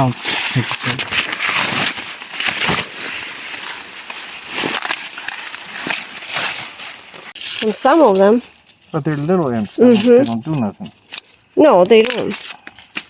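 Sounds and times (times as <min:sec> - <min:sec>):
dry corn leaves rustling: 0:00.0 - 0:13.0
corn stalks snapping: 0:11.8 - 0:13.0.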